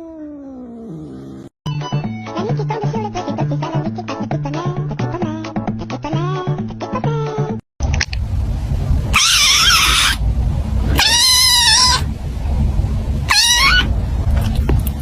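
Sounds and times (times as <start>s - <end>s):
cat meowing: 0.0s - 1.5s, 9.2s - 10.2s, 11.0s - 12.1s, 13.3s - 13.9s
steady low rumble: 7.8s - 15.0s.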